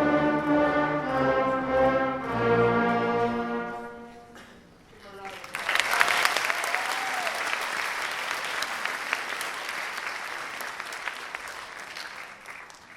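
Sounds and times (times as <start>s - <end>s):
audience applauding: 5.2s - 12.9s.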